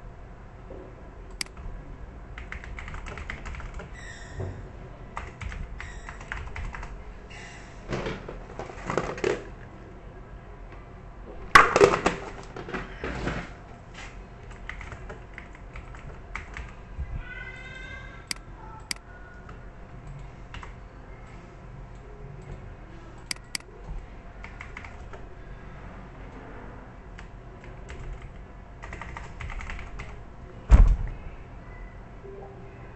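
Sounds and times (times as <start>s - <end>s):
typing on a keyboard: 2.4s - 4.0s, 5.2s - 6.9s, 14.5s - 16.8s, 18.3s - 20.8s, 23.2s - 23.6s, 24.4s - 25.2s, 27.2s - 30.2s.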